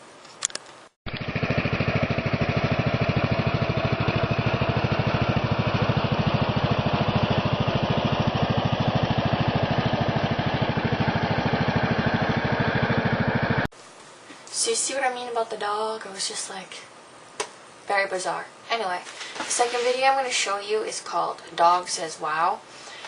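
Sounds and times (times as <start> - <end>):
lawn mower engine running: 1.1 - 13.7.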